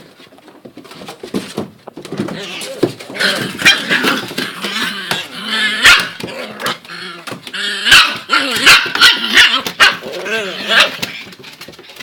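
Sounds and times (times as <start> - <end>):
puppies yipping and barking: 3.2 - 12.0.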